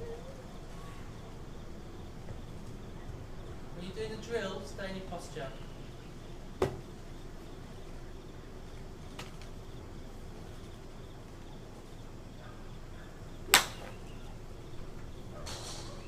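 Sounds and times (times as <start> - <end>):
golf club striking ball: 13.5 - 14.1.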